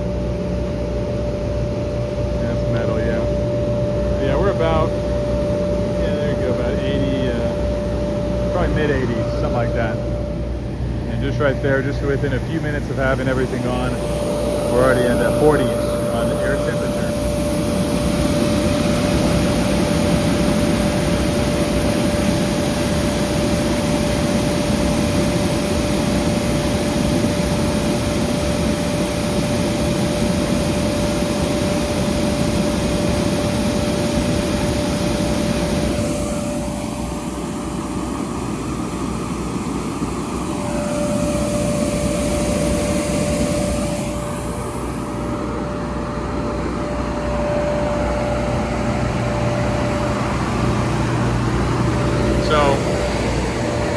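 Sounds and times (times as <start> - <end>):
constant whine: 0.0 - 53.9
generator engine and blower drone: 0.0 - 53.9.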